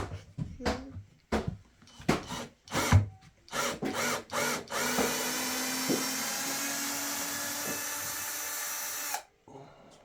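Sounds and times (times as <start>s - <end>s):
power drill driving screws: 3.5s - 9.3s.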